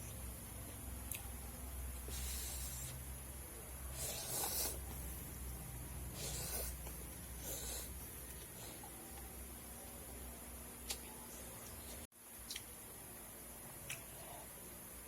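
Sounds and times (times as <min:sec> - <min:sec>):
airy mouth sounds eating: 0:02.0 - 0:03.1, 0:03.9 - 0:05.2, 0:06.1 - 0:09.2.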